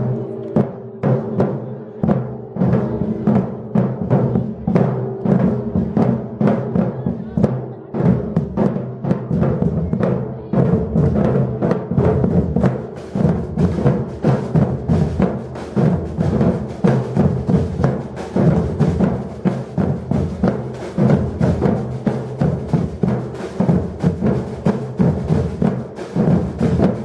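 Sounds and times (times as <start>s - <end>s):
low drums: 0.0s - 27.0s
percussion ensemble drumming: 0.0s - 27.0s.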